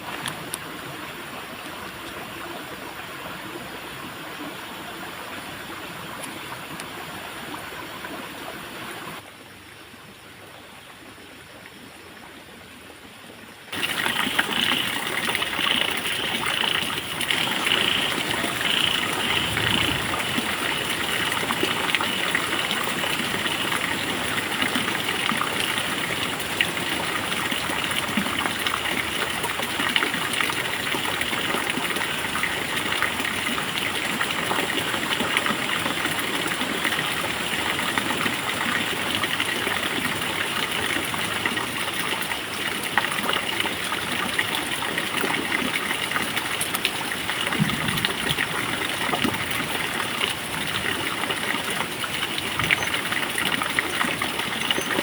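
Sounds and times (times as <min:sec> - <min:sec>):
running water rushing: 0:13.7 - 0:55.0.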